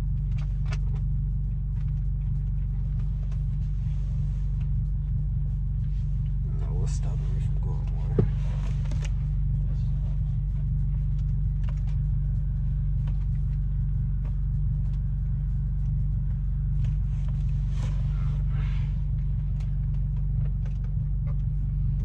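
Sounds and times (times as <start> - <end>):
car engine idling: 0.0 - 22.0.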